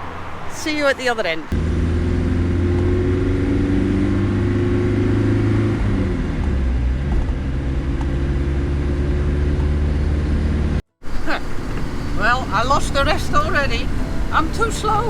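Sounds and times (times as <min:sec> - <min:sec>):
van engine running: 0:06.0 - 0:15.0.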